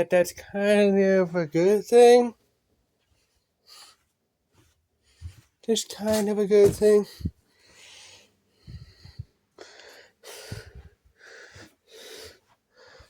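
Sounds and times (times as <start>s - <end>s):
person breathing: 7.1s - 13.0s.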